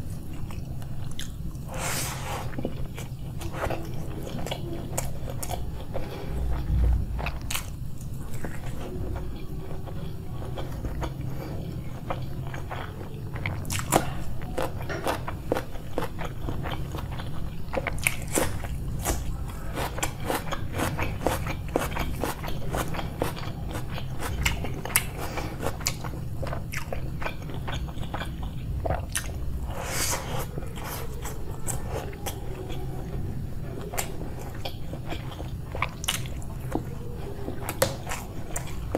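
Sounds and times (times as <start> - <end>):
person chewing with wet mouth sounds: 0.0 - 38.9.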